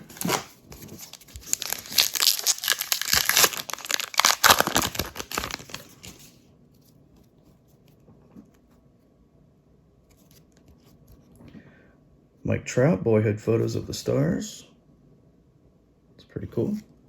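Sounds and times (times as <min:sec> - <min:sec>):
plastic wrapper crinkling and tearing: 0:00.0 - 0:06.3.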